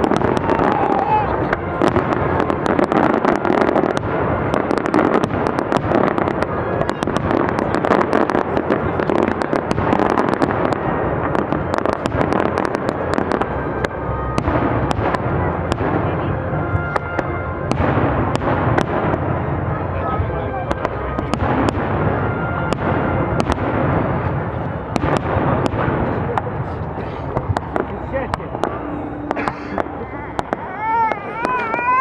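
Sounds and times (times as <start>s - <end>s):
fireworks crackling and banging: 0.0s - 32.0s.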